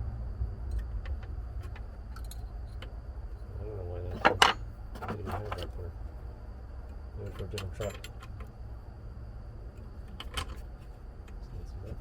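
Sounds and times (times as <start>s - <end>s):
steady low rumble: 0.0s - 12.0s
small metal parts clinking: 2.1s - 2.9s, 4.1s - 5.8s, 7.2s - 8.5s.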